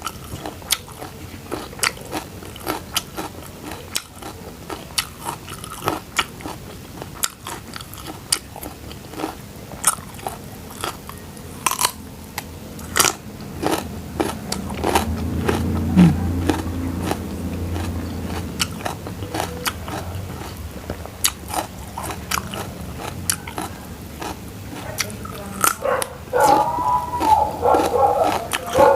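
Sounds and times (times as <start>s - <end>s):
chewing crunchy food: 0.0s - 28.9s
low hum: 10.5s - 28.9s.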